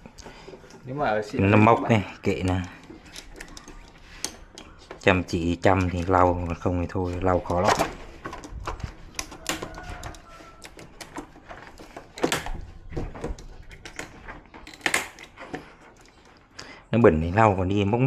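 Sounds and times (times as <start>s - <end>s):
plastic parts clicking and tapping: 2.2s - 16.5s.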